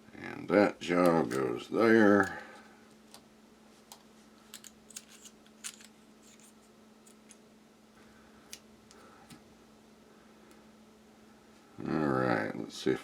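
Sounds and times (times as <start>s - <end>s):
faint steady hum: 0.0s - 13.0s
steel parts clicking: 4.5s - 6.5s.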